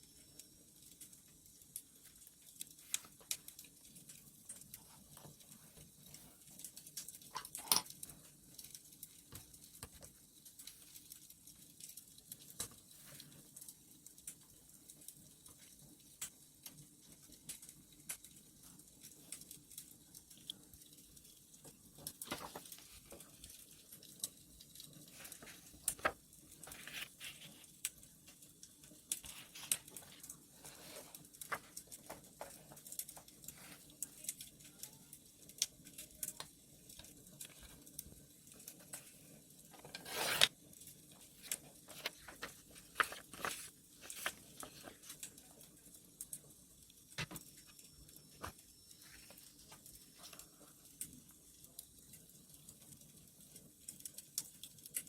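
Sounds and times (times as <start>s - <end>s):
wood fire crackling: 0.0s - 55.0s
paper rustling and taps: 22.0s - 23.3s, 25.2s - 27.6s, 41.4s - 45.2s, 47.2s - 47.5s
paper rasping: 39.8s - 40.5s, 41.4s - 44.4s.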